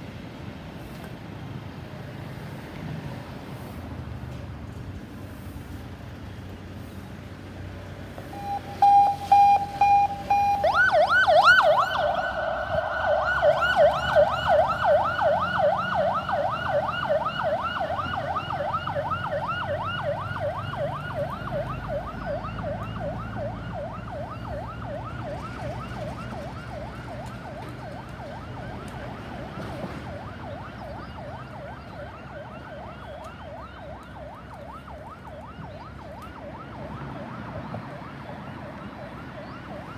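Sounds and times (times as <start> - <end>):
siren horn blasts: 8.3 - 24.7
siren yelp: 8.3 - 39.9.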